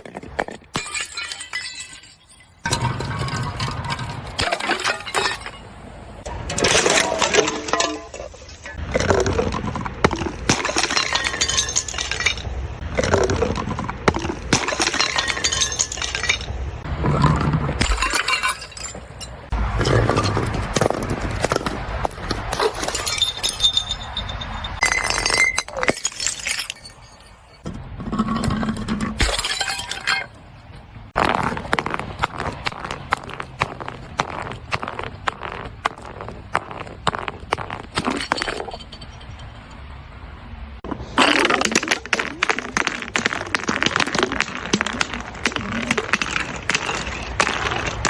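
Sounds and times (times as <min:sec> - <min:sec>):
glass shards clinking: 0:00.0 - 0:05.8, 0:06.5 - 0:08.8, 0:10.5 - 0:12.6, 0:14.5 - 0:21.1, 0:22.4 - 0:30.4, 0:31.8 - 0:39.8
glass bottles shattering: 0:00.0 - 0:30.4, 0:31.2 - 0:39.8, 0:41.1 - 0:48.0.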